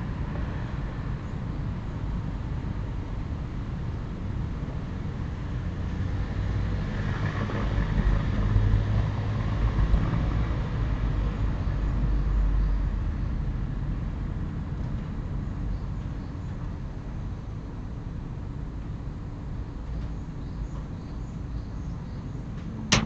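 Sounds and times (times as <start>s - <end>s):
road vehicle rumbling past: 5.6s - 12.8s.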